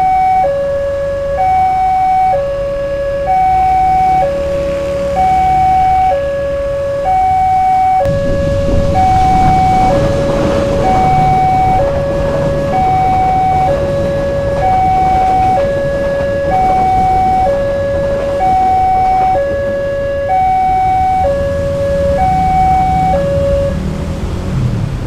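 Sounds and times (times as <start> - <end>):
level crossing two-tone siren: 0.0 - 23.8
low rumble: 8.0 - 25.0.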